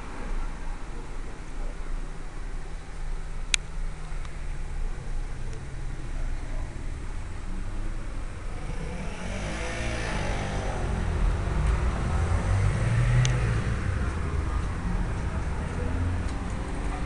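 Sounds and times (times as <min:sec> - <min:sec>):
vehicle engine running: 0:03.7 - 0:17.0.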